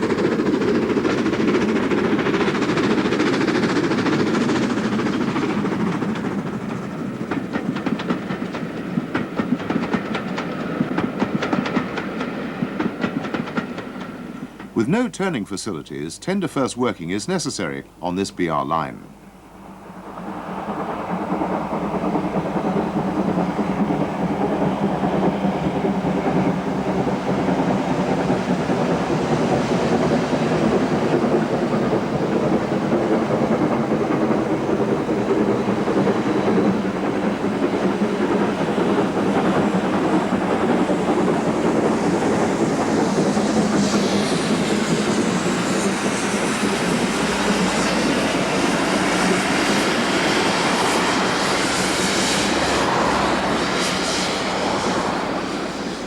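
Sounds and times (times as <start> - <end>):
steam locomotive running on rails: 0.0 - 56.0.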